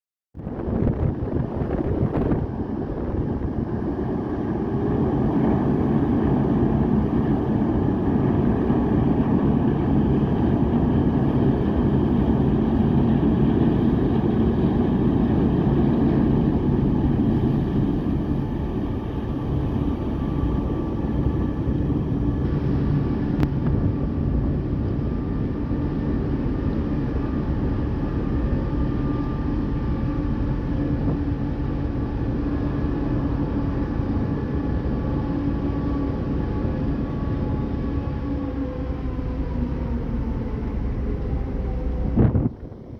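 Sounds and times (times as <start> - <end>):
ship diesel engines rumbling: 9.7 - 23.6, 25.3 - 42.9.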